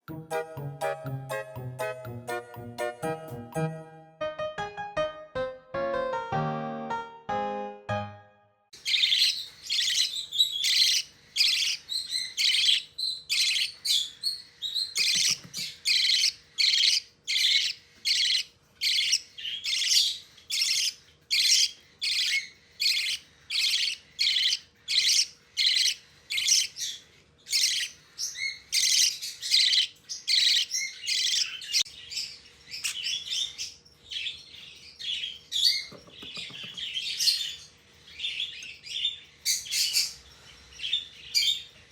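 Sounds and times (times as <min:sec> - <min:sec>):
small birds chirping: 0:08.8 - 0:41.9.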